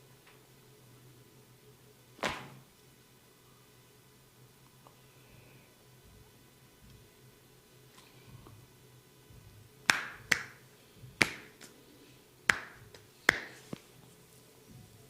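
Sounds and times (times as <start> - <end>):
hands snapping during massage: 2.2 - 2.6, 9.9 - 10.6, 11.2 - 11.8, 12.5 - 13.8.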